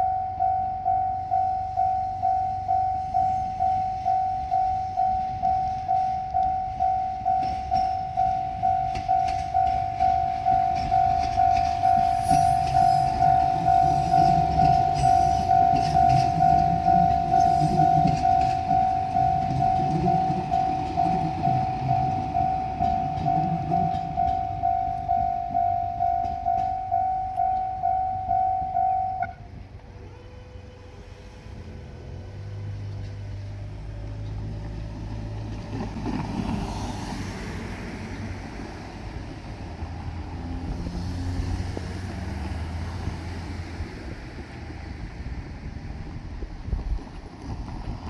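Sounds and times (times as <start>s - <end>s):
level crossing bell dinging: 0.0s - 29.3s
vehicle engine rumble: 0.0s - 48.0s.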